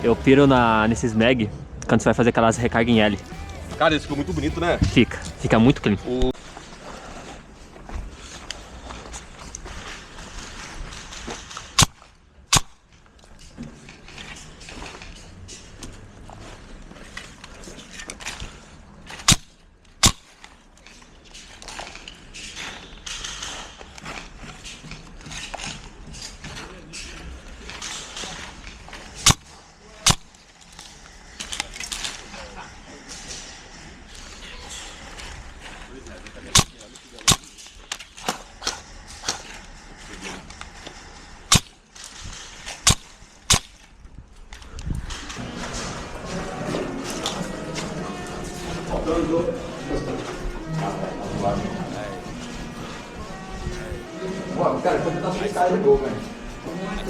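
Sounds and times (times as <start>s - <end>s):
low rumble: 0.0s - 6.5s.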